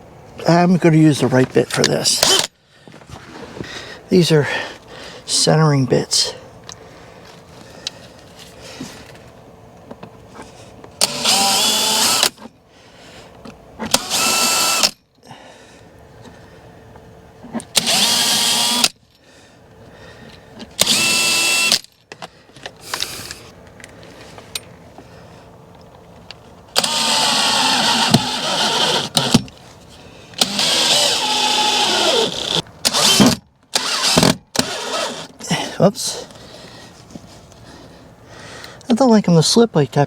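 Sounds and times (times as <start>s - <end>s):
power drill whining: 11.0s - 12.4s, 13.9s - 15.0s, 17.8s - 18.9s, 20.8s - 21.9s, 26.8s - 29.4s, 30.4s - 35.4s.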